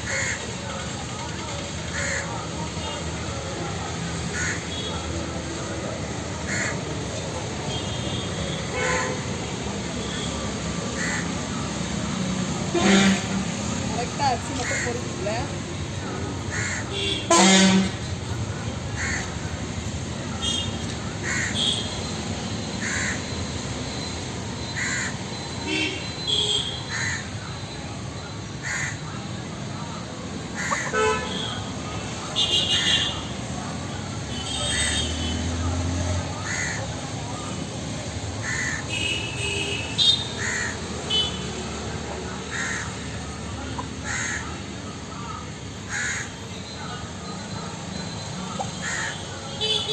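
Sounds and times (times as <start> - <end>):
steady background noise: 0.0 - 49.9
birds calling: 13.9 - 15.6, 30.4 - 33.1
bird calling: 30.5 - 31.1.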